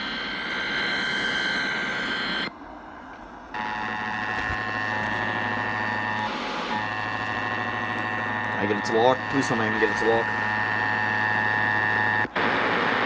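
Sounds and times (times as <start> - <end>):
radio static: 3.6 - 13.0.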